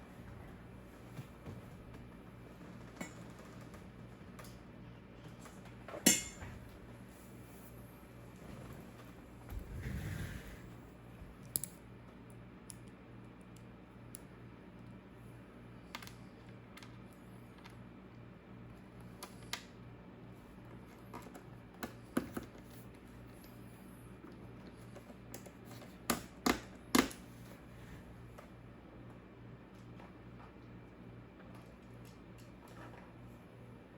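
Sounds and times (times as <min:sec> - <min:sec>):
steady low hum: 0:00.0 - 0:33.9.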